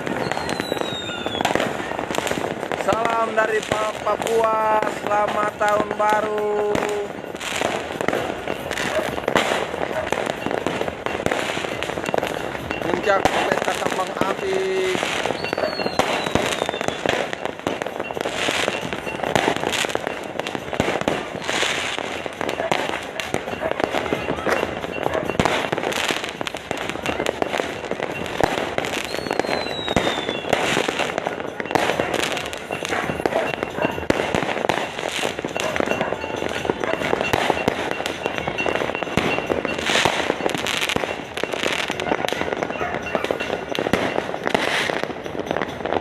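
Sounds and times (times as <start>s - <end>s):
descending firework whistle: 0.0s - 2.3s, 15.2s - 17.4s, 28.9s - 33.6s
firecrackers crackling: 0.0s - 46.0s
firework bangs: 0.0s - 46.0s.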